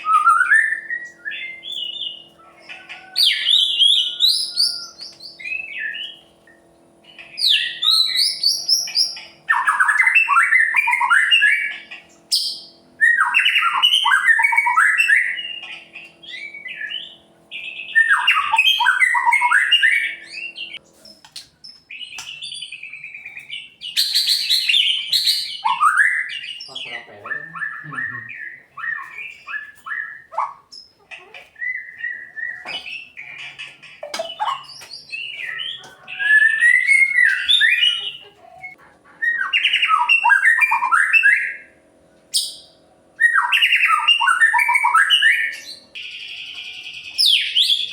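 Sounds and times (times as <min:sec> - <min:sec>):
bird singing whistles: 0:31.6 - 0:33.1, 0:34.2 - 0:38.0, 0:42.4 - 0:47.9.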